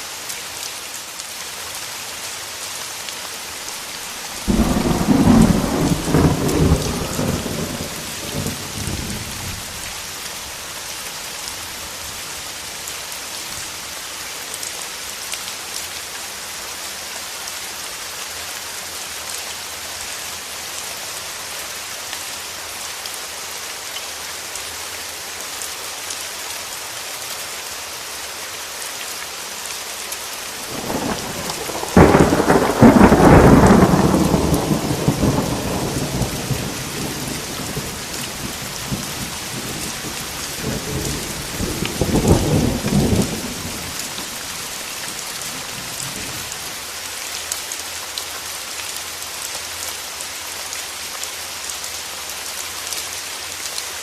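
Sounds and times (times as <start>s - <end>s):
heavy rain: 0.0s - 54.0s
thunder crack and rumble: 4.4s - 9.7s, 30.7s - 44.4s.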